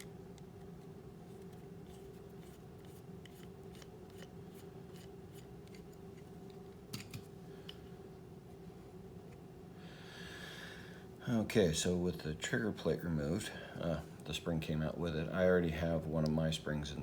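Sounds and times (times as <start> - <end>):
faint steady hum: 0.0 - 17.0
clicks of small parts handled: 5.7 - 7.8.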